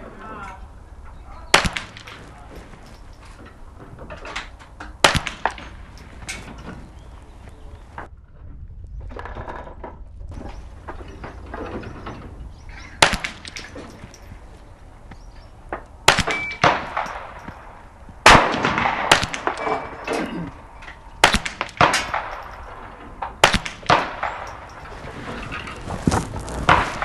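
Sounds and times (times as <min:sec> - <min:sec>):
rifle shots: 0:01.5 - 0:02.9, 0:05.0 - 0:07.5, 0:12.9 - 0:14.2, 0:16.0 - 0:25.1.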